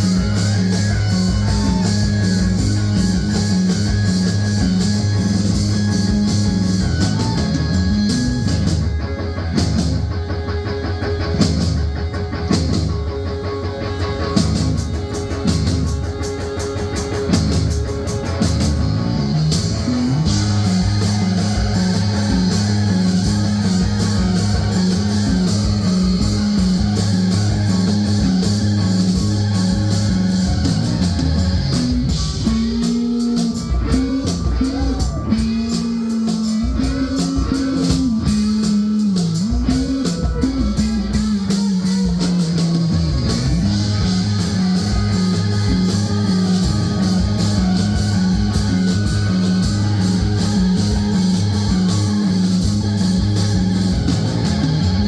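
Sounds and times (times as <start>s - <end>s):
live rock band playing: 0.0s - 55.0s
sliding bending guitar notes: 0.0s - 55.0s.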